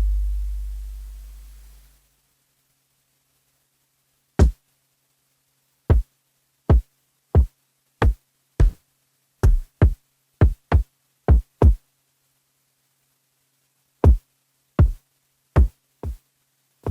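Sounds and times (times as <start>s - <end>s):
deep drum hits: 0.0s - 1.0s.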